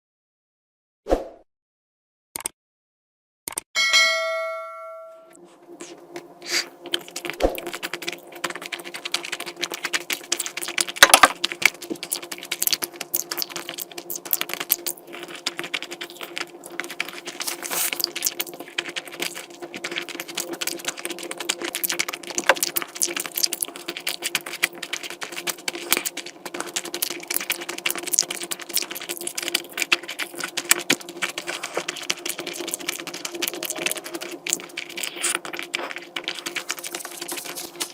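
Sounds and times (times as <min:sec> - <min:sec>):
bell-like chime: 0:03.8 - 0:05.3
steady low hum: 0:03.8 - 0:37.9
mouth clicks and chewing: 0:05.8 - 0:37.9.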